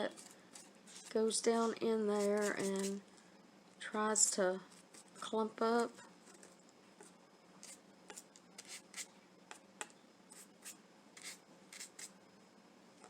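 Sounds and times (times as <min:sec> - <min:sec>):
paintbrush scratchy strokes: 0:00.0 - 0:03.0, 0:04.7 - 0:05.3, 0:07.6 - 0:09.1, 0:10.3 - 0:12.1.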